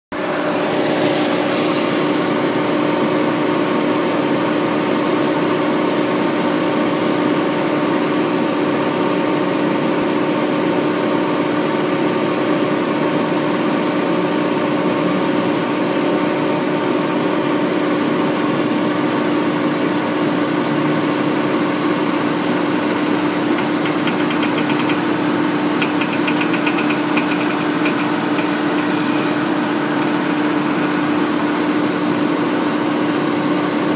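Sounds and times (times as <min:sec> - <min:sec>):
car engine idling: 0:22.2 - 0:31.6.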